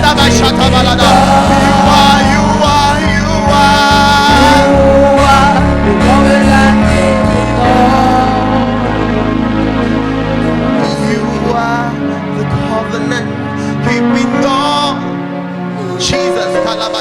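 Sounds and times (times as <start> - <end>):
voices singing: 0.0 - 9.9
bass beat: 0.0 - 13.3
held keyboard notes: 0.0 - 17.0.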